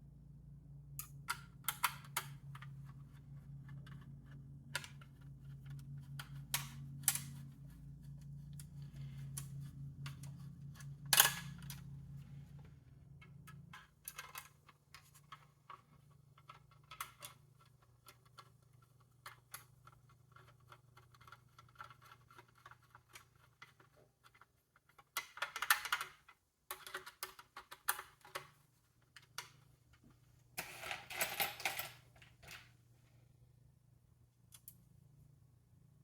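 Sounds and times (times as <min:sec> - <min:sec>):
steady low hum: 0:00.0 - 0:16.7
computer parts clicking and rattling: 0:13.2 - 0:28.6, 0:30.6 - 0:32.7.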